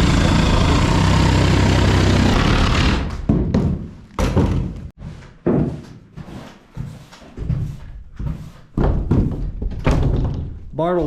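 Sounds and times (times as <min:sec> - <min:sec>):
wooden door knocking and shutting: 0:02.3 - 0:04.9, 0:08.8 - 0:10.6.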